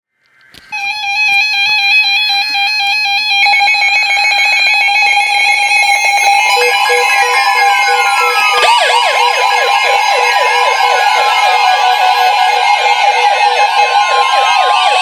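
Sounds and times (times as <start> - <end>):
rapid electronic alarm beeping: 0.7 - 15.0.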